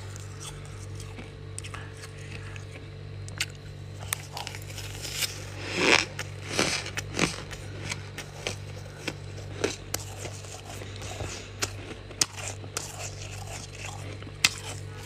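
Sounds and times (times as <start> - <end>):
frost crunched by chewing: 0.0 - 15.0
steady low hum: 0.0 - 15.0
frost crackling and scraping: 4.0 - 15.0.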